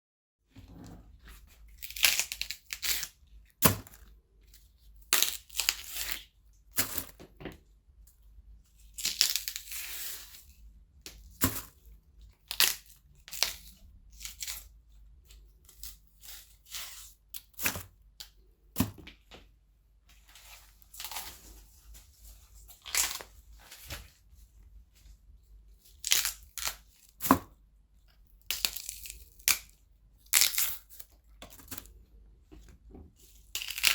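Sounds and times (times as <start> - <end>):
celery stalks snapping: 33.6 - 33.9.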